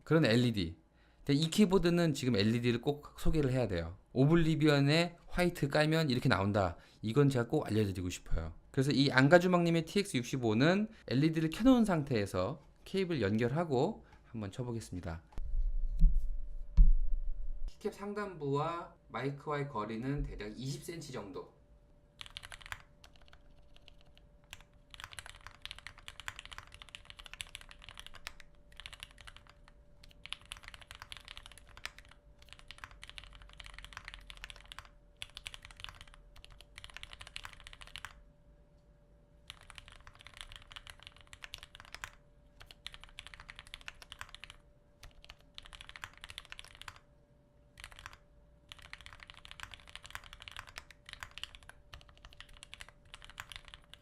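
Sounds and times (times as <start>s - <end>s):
mechanical keyboard typing: 22.2s - 38.2s, 39.4s - 47.0s, 47.8s - 54.0s.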